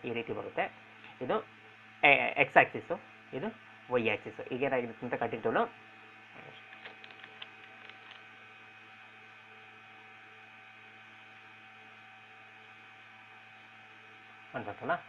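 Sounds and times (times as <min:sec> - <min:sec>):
electrical hum: 0:00.0 - 0:15.0
faint clicks: 0:06.7 - 0:08.2.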